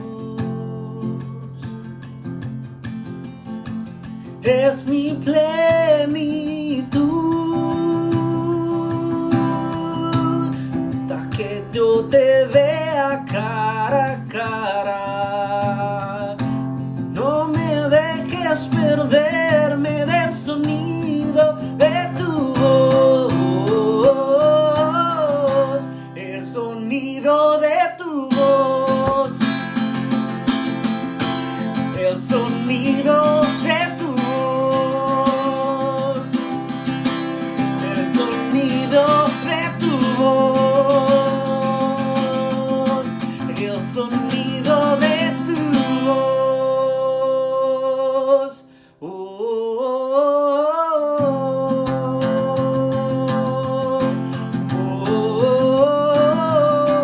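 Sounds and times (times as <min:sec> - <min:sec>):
person singing: 0:00.0 - 0:01.8, 0:04.4 - 0:57.0
acoustic guitar chords: 0:00.0 - 0:57.0.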